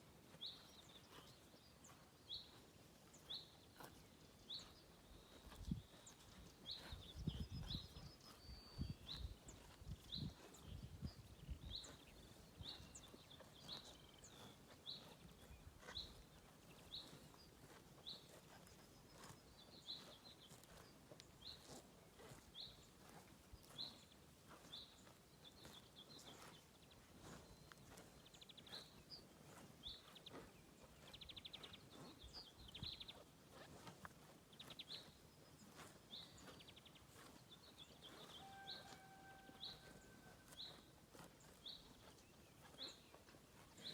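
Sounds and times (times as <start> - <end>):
cows tearing and chewing grass: 0.0 - 43.9
small bird chirping: 0.4 - 33.9.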